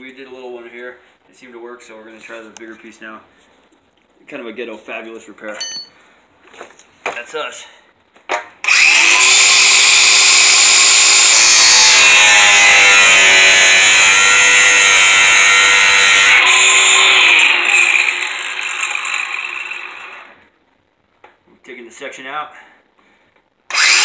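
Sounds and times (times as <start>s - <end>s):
power tool cutting aluminum: 8.6s - 20.4s, 23.7s - 24.0s.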